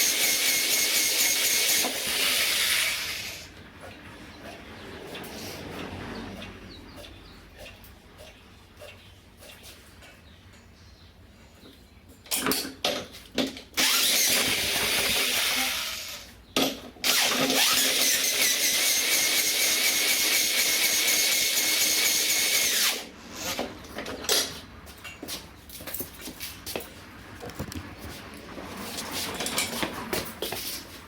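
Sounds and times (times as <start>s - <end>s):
electric drill motor whine: 0.0s - 3.5s, 13.8s - 16.3s, 17.0s - 23.6s
drill clicking: 13.8s - 16.2s.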